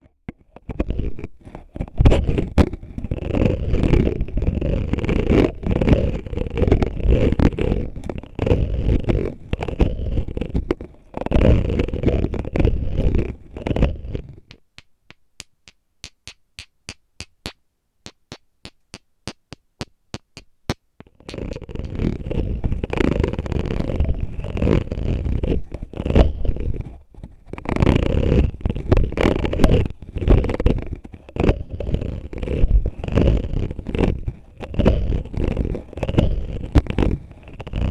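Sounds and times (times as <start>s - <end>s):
bottle scraping on microphone: 0.5s - 37.9s
sharp taps: 14.5s - 21.4s.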